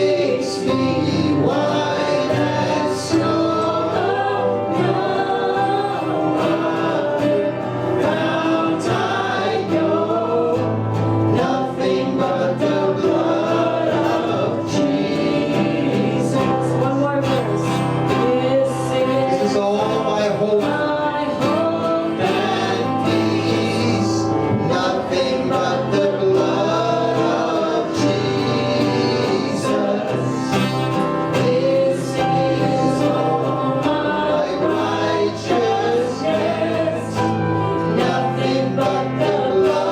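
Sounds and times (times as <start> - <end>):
group of voices singing: 0.0 - 39.9
instrumental accompaniment with bass: 0.0 - 39.9.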